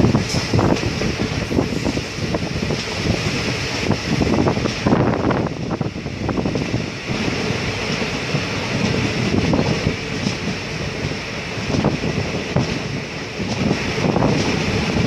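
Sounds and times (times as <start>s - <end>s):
train running rumble: 0.0s - 15.0s
wind buffeting microphone: 0.0s - 15.0s
rattles and clicks: 6.4s - 15.0s.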